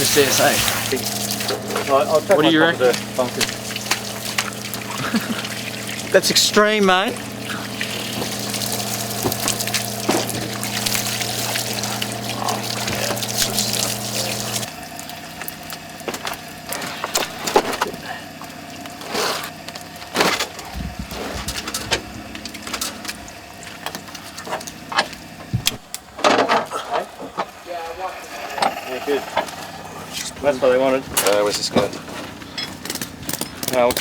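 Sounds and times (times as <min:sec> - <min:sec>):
water pouring: 0:00.0 - 0:17.8
low hum: 0:00.0 - 0:19.0, 0:19.8 - 0:31.3
knocks and clatter of handling: 0:20.0 - 0:27.5, 0:31.1 - 0:34.0.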